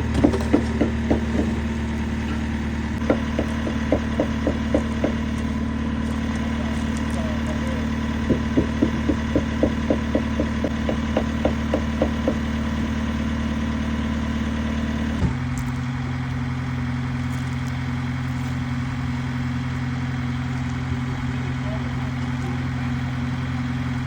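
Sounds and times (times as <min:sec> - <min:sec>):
engine running: 0:00.0 - 0:24.0.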